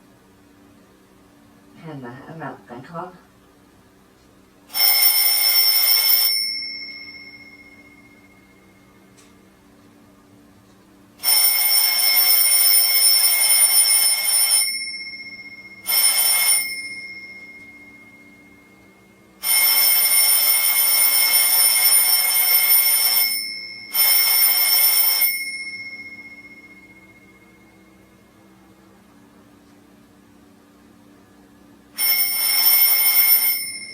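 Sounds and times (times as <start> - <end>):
alarm clock bell ringing: 4.7 - 8.6, 11.2 - 18.8, 19.4 - 27.5, 32.0 - 33.9.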